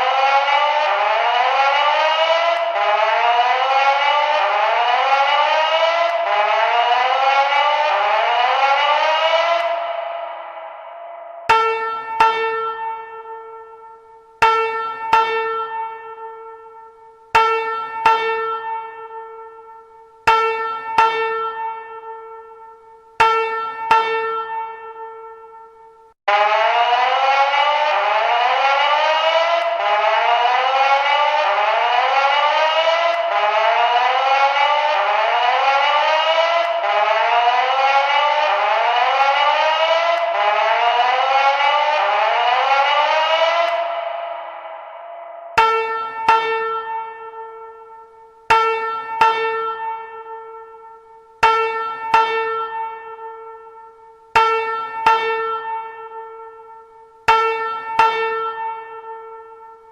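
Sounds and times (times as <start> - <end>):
rising sweep alarm tone: 0.0 - 16.2, 26.3 - 50.3
fire alarm chime tone: 0.0 - 59.9.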